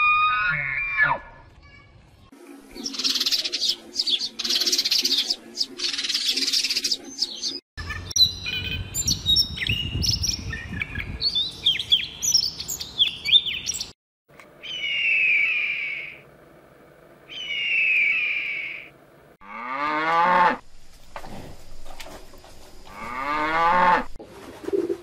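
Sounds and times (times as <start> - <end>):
birds chirping with falling whistles: 14.6 - 16.2, 17.3 - 18.9
drawn-out falling bird call: 14.6 - 16.2, 17.3 - 19.0
harsh rasping bird calls: 14.6 - 16.2, 17.3 - 18.9.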